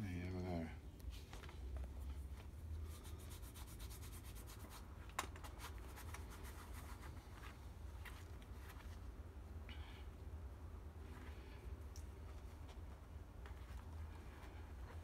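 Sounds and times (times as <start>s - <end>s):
low steady hum: 0.0s - 15.0s
rubbing and scratching: 1.1s - 9.2s.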